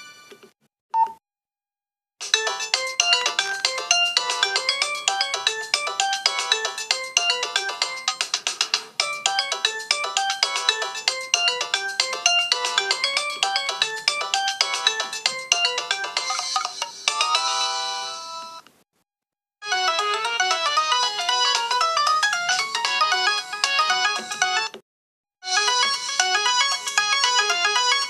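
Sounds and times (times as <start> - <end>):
midi ringtone melody: 2.2 - 8.2, 9.0 - 17.8, 19.6 - 24.7, 25.4 - 28.0.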